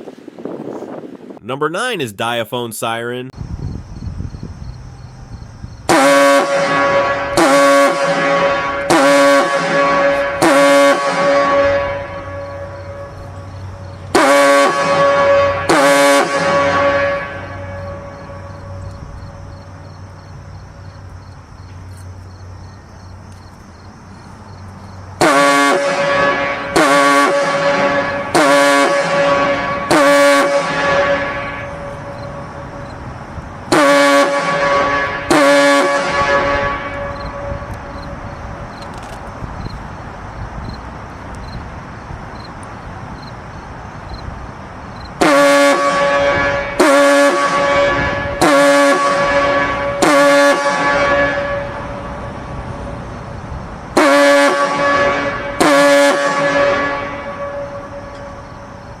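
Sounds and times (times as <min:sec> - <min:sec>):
fog horn blasts with echo: 0:05.9 - 0:19.5, 0:25.2 - 0:33.0, 0:33.7 - 0:38.3, 0:45.2 - 0:52.7, 0:54.0 - 0:58.7
fog signal blasts: 0:05.9 - 0:19.7.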